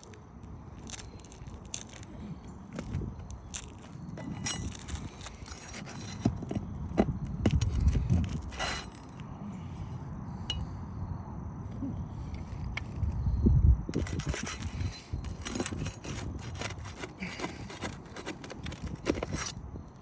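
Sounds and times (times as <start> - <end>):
metal bar prying nails: 14.0 - 19.6.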